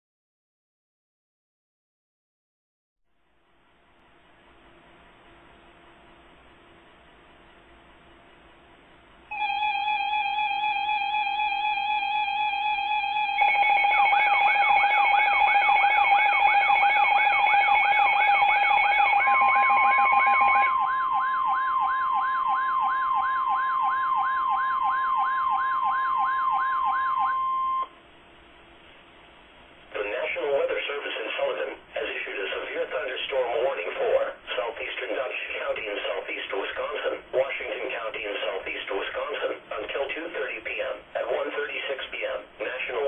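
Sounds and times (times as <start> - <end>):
steady electronic alert tone: 9.3 - 27.9
wavering siren-like tone: 9.3 - 27.9.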